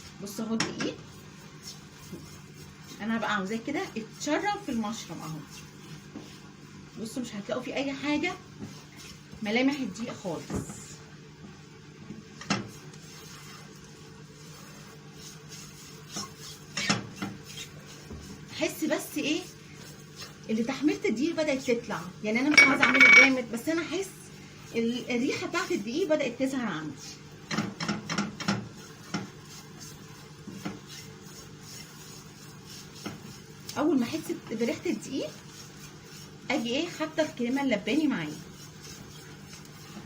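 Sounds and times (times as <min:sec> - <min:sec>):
food cooking in a pan: 0:00.0 - 0:10.4, 0:11.8 - 0:40.0
faint sizzle: 0:00.0 - 0:40.0
spoon scraping a frying pan: 0:14.6 - 0:24.1
utensil knocking against pan: 0:22.5 - 0:23.4.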